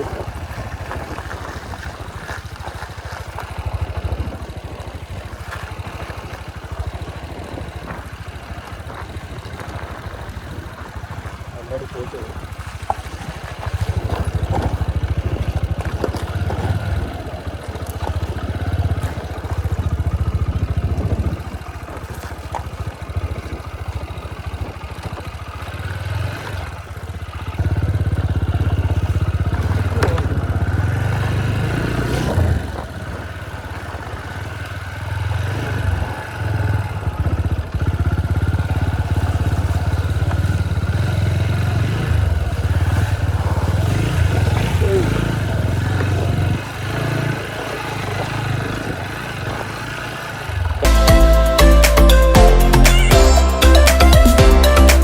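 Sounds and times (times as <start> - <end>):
motorcycle engine running: 0.0 - 55.0
wind noise on microphone: 3.7 - 4.8, 19.4 - 22.0, 31.8 - 34.1.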